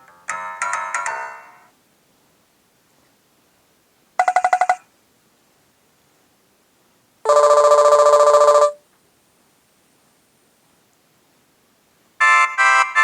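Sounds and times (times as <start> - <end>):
mobile phone ring tones: 4.2 - 4.8, 7.3 - 8.8.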